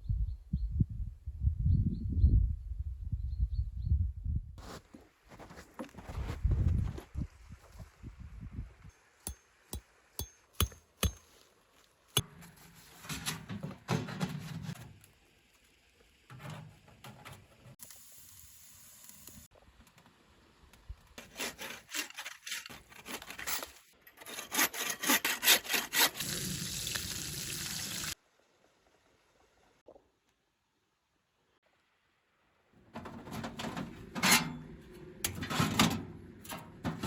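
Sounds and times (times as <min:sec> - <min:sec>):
hand saw cutting wood: 0:21.2 - 0:26.5.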